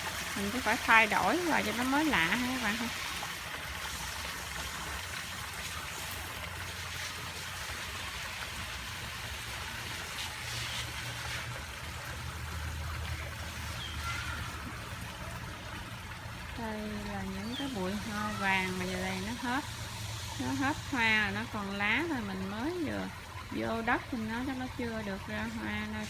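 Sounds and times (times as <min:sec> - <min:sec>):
water splashing over rocks: 0:00.0 - 0:26.0.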